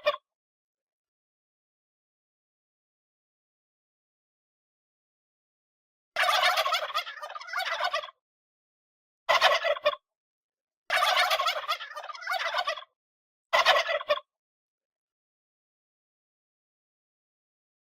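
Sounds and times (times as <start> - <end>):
turkey gobbling: 0.0 - 0.3, 6.2 - 8.2, 9.3 - 10.0, 10.9 - 12.9, 13.5 - 14.3.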